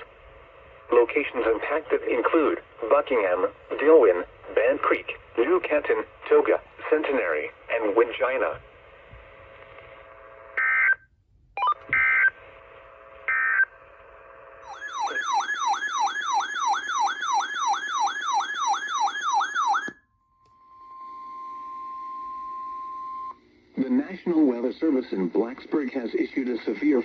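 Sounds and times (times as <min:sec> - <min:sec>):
steady warning alarm tone: 0:14.6 - 0:20.0.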